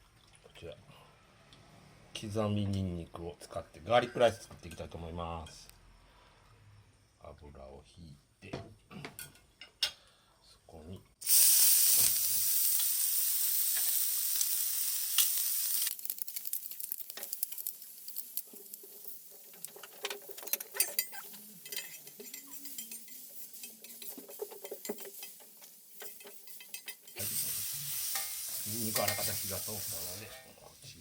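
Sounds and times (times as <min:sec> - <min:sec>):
garlic sizzling in oil: 0:11.2 - 0:31.0
spatula clicking and scraping: 0:15.2 - 0:27.3.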